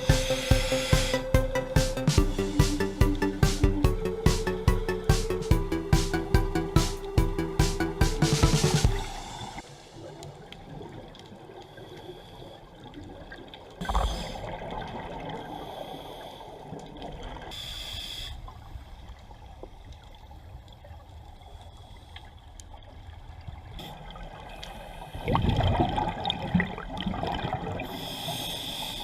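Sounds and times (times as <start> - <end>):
muffled underwater hiss: 0.0 - 3.4, 8.6 - 23.0, 23.6 - 25.9, 27.6 - 29.0
exhaled bubbles gurgling: 12.8 - 17.5, 23.6 - 28.5.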